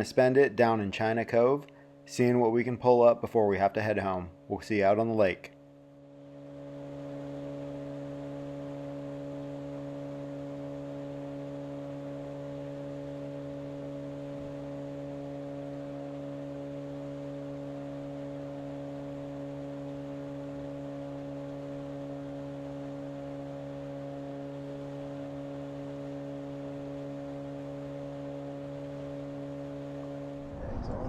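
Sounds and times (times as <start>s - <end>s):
steady hum of held pitches: 0.0s - 19.3s.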